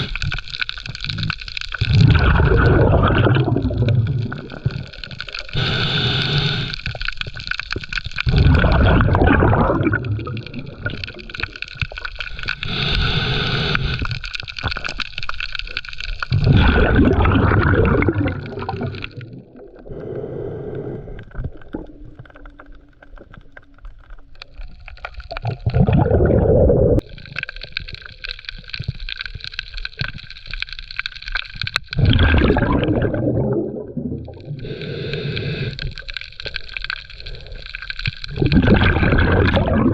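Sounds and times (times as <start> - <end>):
steady underwater hiss: 0.0 - 0.4, 4.3 - 7.4, 10.4 - 14.6, 16.7 - 22.3, 33.0 - 38.1
underwater breath bubbles gurgling: 0.0 - 39.9.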